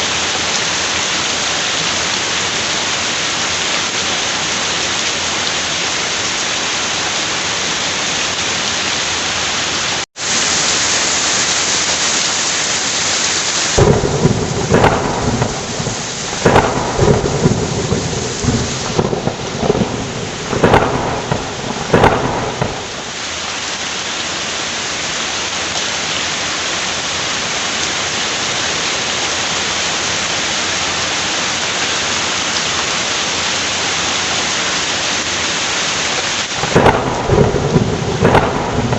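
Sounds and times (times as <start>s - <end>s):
heavy rain pouring: 0.0s - 38.9s
thunder rumbling: 13.7s - 23.2s, 36.6s - 38.9s.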